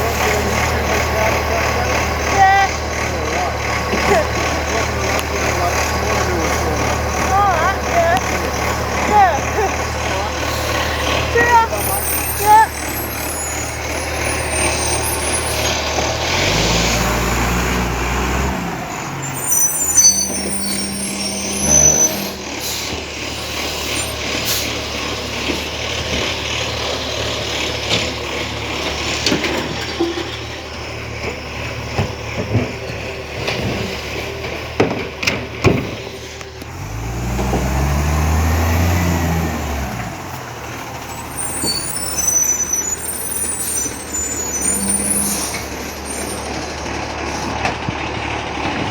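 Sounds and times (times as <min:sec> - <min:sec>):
garbage truck engine revving: 0:00.0 - 0:48.9
sharp clanks and knocks: 0:27.8 - 0:36.2.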